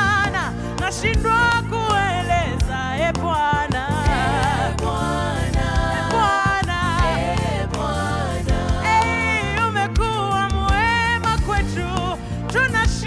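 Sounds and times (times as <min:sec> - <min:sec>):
band with steady drum beat: 0:00.0 - 0:13.0
voices singing with vibrato: 0:03.7 - 0:12.2.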